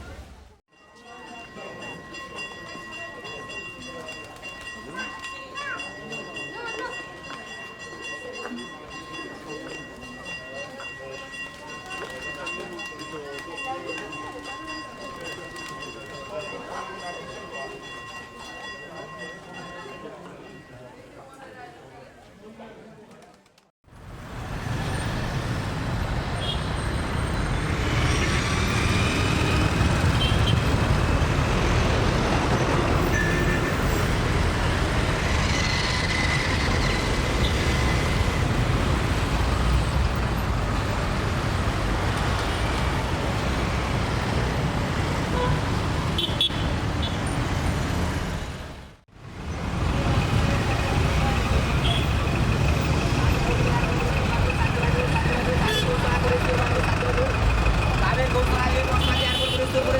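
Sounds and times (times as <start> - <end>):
traffic rumble of engines and tyres: 23.8 - 59.9
car horn toots: 30.1 - 30.7, 45.3 - 47.2, 54.6 - 56.8, 58.9 - 59.9.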